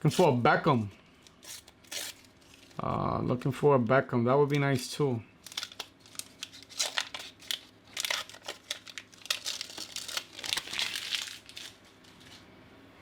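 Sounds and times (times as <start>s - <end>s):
wrapper crinkling: 5.4s - 12.4s.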